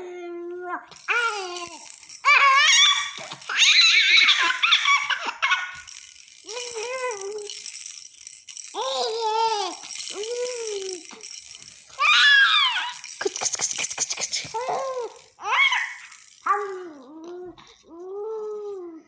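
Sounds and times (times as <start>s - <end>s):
infant cooing and squealing: 0.0s - 5.7s, 6.5s - 7.5s, 8.8s - 11.1s, 12.0s - 19.0s
light rattling: 5.8s - 17.8s.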